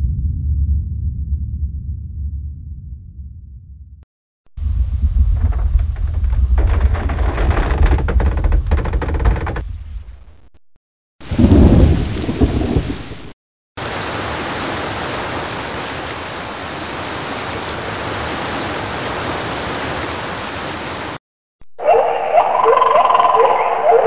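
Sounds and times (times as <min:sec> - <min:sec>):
thunder rumble: 0:00.0 - 0:03.9, 0:04.5 - 0:10.6, 0:11.2 - 0:13.4
steady rain hiss: 0:11.9 - 0:21.2.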